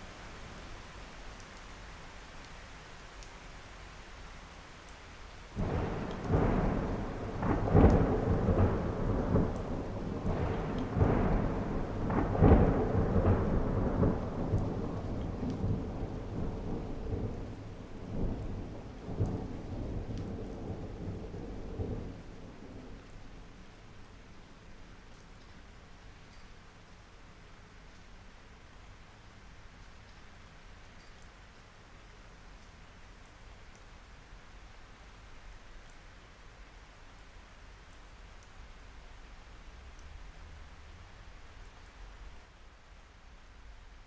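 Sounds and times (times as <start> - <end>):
heavy rain falling: 0.0 - 44.0
thunder rumbling and cracking: 5.6 - 23.2.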